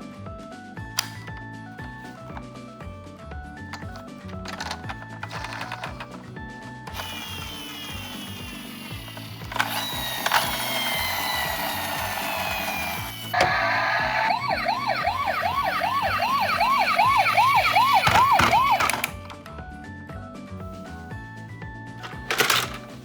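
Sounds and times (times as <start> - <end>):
background music: 0.0 - 23.0
electronic siren wailing and yelping: 12.5 - 19.1.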